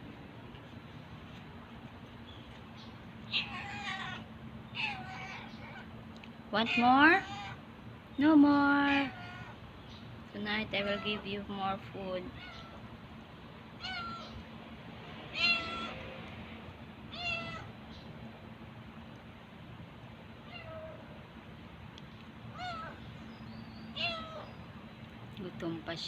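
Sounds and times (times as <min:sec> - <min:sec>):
cat meowing: 0:03.3 - 0:05.9, 0:06.6 - 0:07.6, 0:09.0 - 0:09.6, 0:12.3 - 0:12.8, 0:13.8 - 0:14.4, 0:15.3 - 0:16.0, 0:17.1 - 0:17.7, 0:20.4 - 0:21.0, 0:22.5 - 0:23.0, 0:23.9 - 0:24.5.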